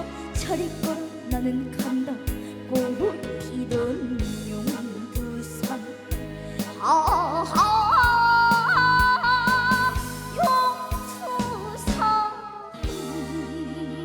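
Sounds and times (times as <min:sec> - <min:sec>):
drum beats: 0:03.7 - 0:05.4, 0:06.1 - 0:13.4.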